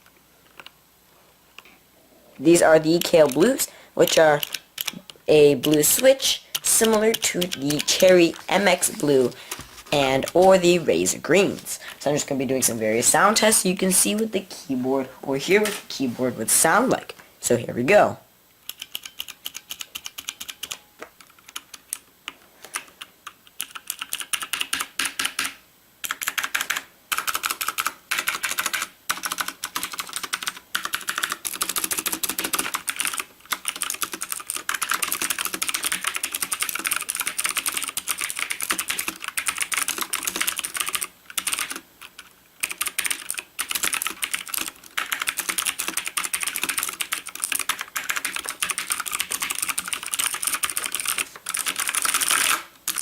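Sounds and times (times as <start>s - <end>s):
clicky mechanical keyboard typing: 2.9s - 10.6s, 18.6s - 53.0s.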